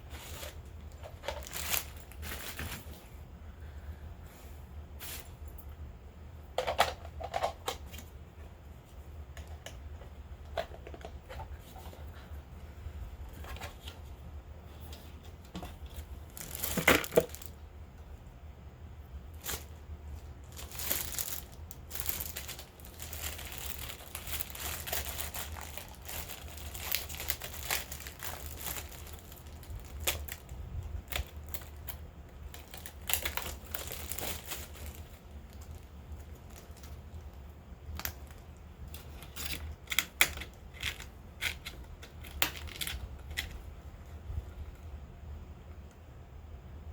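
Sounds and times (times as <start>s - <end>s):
wrapping crinkling and rustling: 0.0s - 3.2s, 5.0s - 5.6s, 14.8s - 17.6s, 19.3s - 44.9s
steady low hum: 0.0s - 46.9s.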